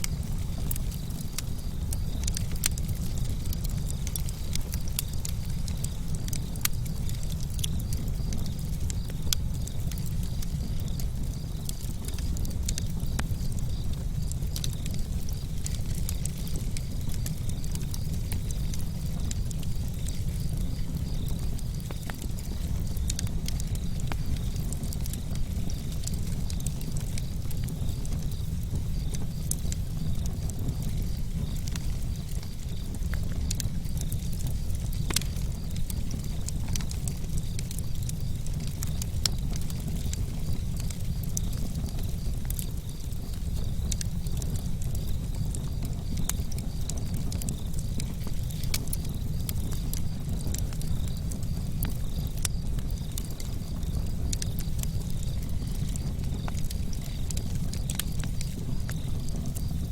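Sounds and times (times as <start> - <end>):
campfire crackling: 0.0 - 59.9
low fire rumble: 0.0 - 59.9.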